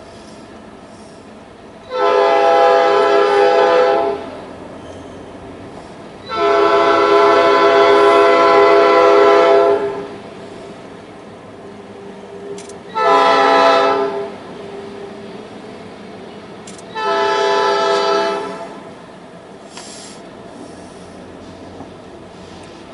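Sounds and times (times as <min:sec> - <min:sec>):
locomotive air horn blasts: 0:01.8 - 0:04.3, 0:06.2 - 0:10.2, 0:12.4 - 0:14.4, 0:16.9 - 0:18.8.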